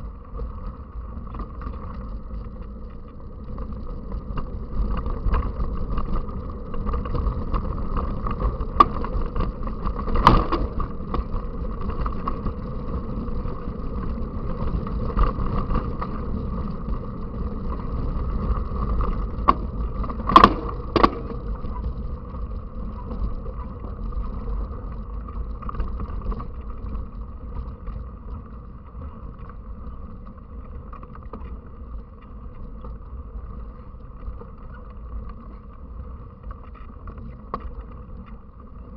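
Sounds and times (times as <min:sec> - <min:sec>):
wind rumbling on microphone: 0:00.0 - 0:38.9
bike and mount knocking: 0:10.1 - 0:10.9, 0:19.5 - 0:21.5.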